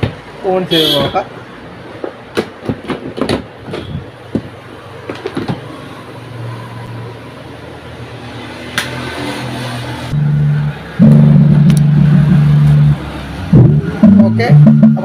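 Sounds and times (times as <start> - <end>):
clicks and knocks of handling: 2.0 - 5.6.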